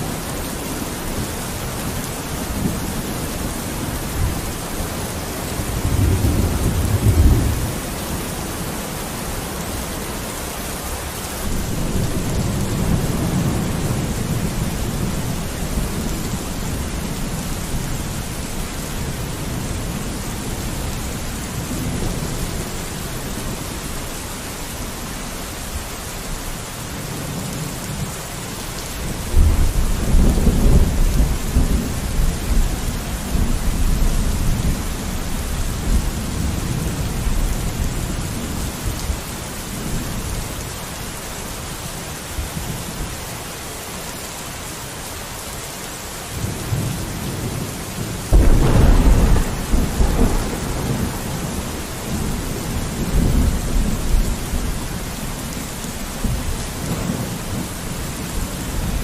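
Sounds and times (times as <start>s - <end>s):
rain on a window: 0.0s - 59.0s
rolling thunder: 5.5s - 8.0s, 46.5s - 55.1s.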